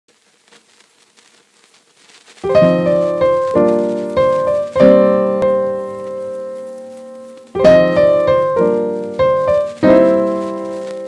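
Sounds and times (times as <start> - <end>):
faint hiss: 0.1 - 11.0
sustained piano chords: 2.5 - 11.0.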